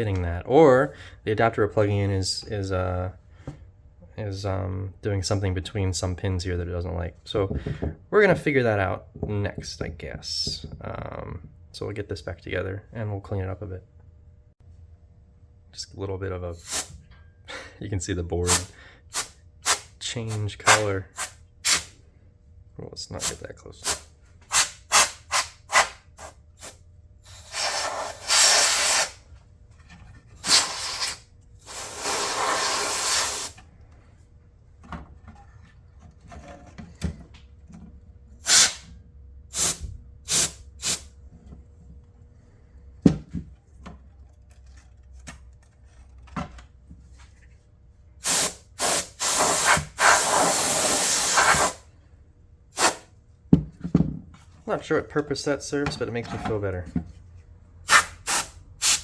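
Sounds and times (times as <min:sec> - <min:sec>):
aerosol can spraying: 0:18.5 - 0:19.8, 0:20.7 - 0:21.9, 0:23.8 - 0:29.2, 0:30.4 - 0:33.6, 0:38.4 - 0:38.8, 0:39.6 - 0:41.1, 0:48.2 - 0:51.8, 0:52.8 - 0:53.0, 0:57.9 - 0:59.0.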